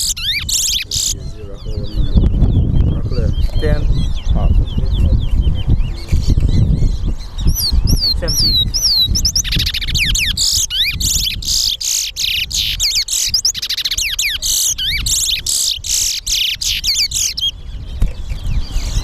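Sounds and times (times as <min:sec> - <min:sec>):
finch singing whistles and chirps: 0:00.0 - 0:19.0.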